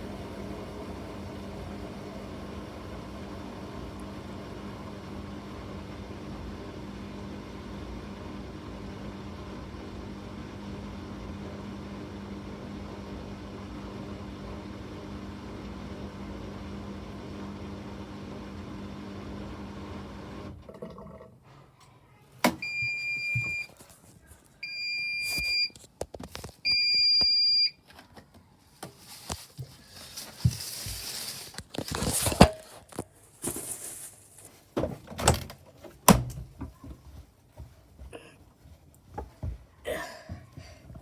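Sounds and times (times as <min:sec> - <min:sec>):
washing machine humming: 0:00.0 - 0:23.8, 0:33.4 - 0:41.0
washing machine click: 0:22.4 - 0:22.9, 0:35.0 - 0:36.5.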